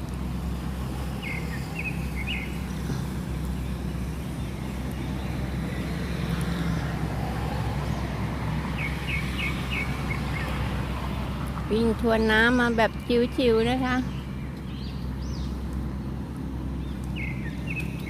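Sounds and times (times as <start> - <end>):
boat diesel engine drone: 0.0 - 18.0
bird chirps: 1.2 - 6.8, 8.8 - 10.6, 13.9 - 15.6, 16.8 - 18.0.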